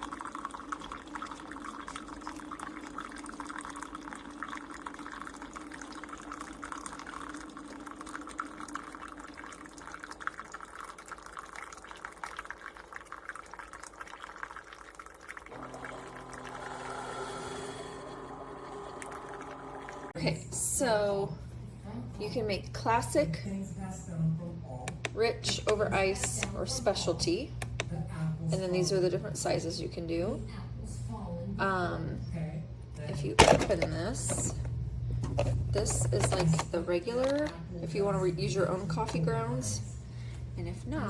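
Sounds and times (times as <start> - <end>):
coffee streaming into cup: 0.0 - 20.3, 33.0 - 40.4
coffee machine hum: 0.0 - 23.5, 24.7 - 41.0.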